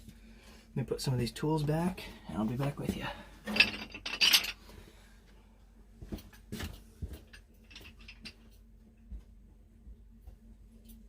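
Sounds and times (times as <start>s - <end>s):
hand tools clattering: 3.4s - 4.6s
light metal clinks and knocks: 3.4s - 4.6s, 6.6s - 8.6s.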